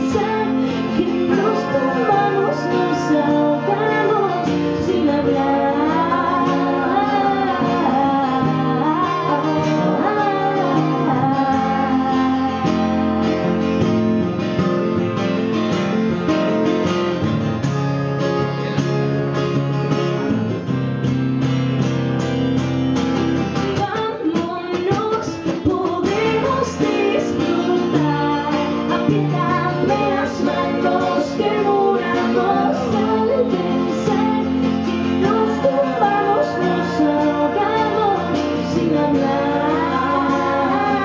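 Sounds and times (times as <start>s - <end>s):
woman singing: 0.0s - 13.6s, 23.7s - 41.0s
acoustic guitar chords: 0.0s - 41.0s.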